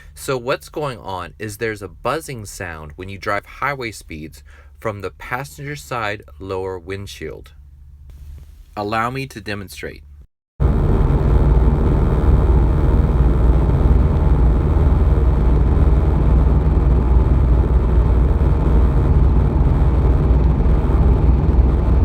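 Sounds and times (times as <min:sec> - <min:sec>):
windshield seal buzz: 0:08.1 - 0:08.8
car road and engine drone: 0:10.7 - 0:22.0.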